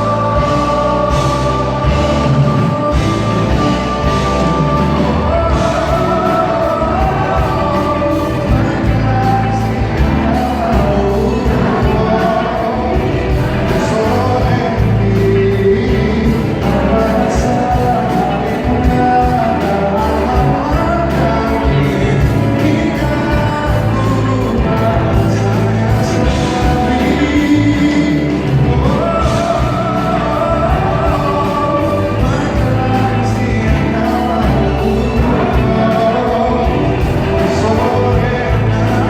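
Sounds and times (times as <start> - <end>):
live pop band playing: 0.0 - 39.0
person singing: 0.0 - 39.0.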